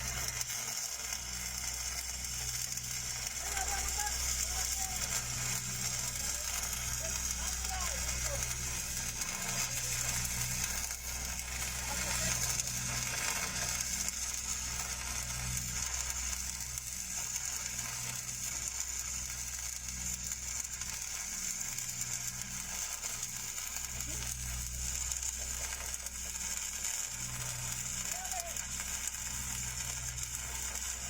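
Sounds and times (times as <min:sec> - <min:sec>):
steady low hum: 0:00.0 - 0:20.8
welding arc crackling: 0:00.0 - 0:31.0.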